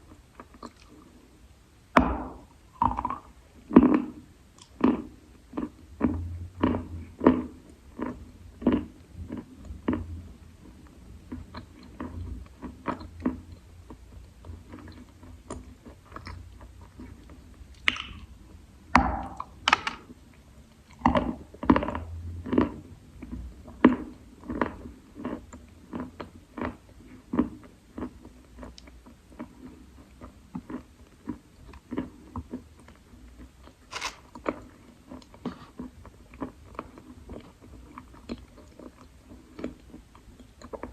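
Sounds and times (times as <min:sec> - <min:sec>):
chalk being bitten and chewed: 0:33.9 - 0:34.3.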